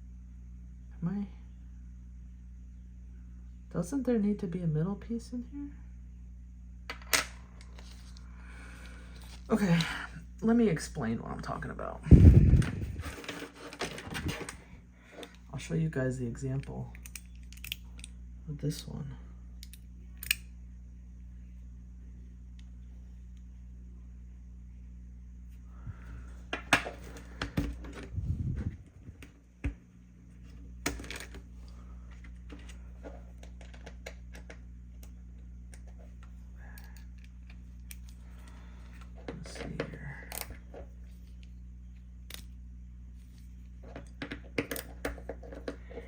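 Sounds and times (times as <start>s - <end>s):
steady low hum: 0.0s - 46.0s
metal pieces clicking together: 16.9s - 18.1s, 19.6s - 20.4s.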